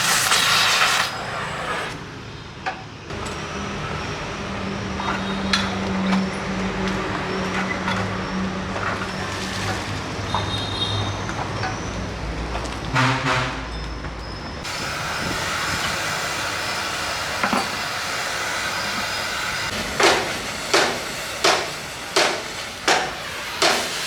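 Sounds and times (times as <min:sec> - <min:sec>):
motor humming: 0:14.6 - 0:24.0
sharp metallic knocks: 0:19.7 - 0:24.0.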